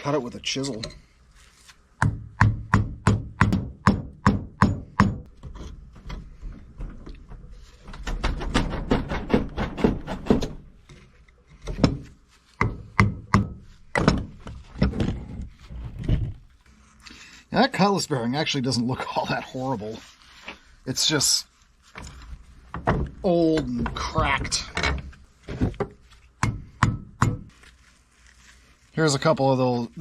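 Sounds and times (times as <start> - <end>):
hammer striking chisel: 2.0 - 5.3, 12.6 - 14.2, 26.4 - 27.5.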